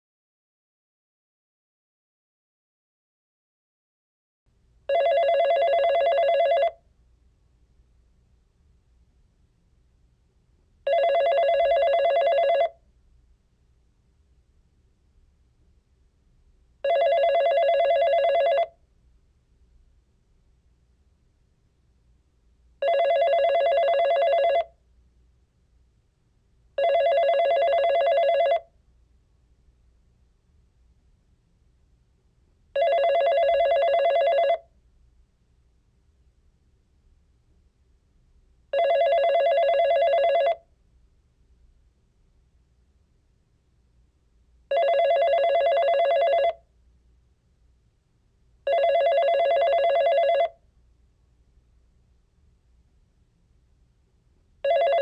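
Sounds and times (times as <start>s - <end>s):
telephone ringing: 4.9s - 6.8s, 10.9s - 12.8s, 16.8s - 18.8s, 22.8s - 24.7s, 26.8s - 28.7s, 32.8s - 34.7s, 38.7s - 40.6s, 44.7s - 46.6s, 48.7s - 50.6s, 54.6s - 55.0s.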